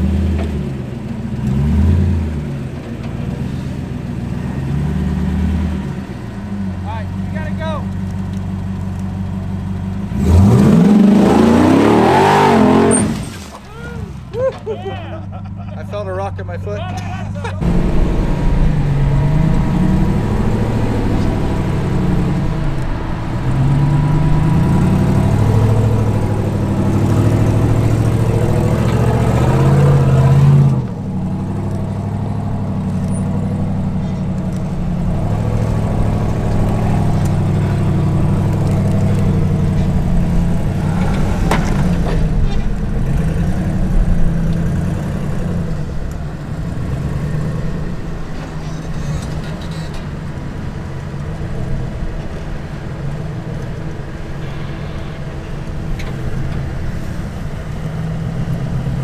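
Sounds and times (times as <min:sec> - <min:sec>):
engine revving: 0:00.0 - 0:14.2, 0:17.4 - 0:50.8.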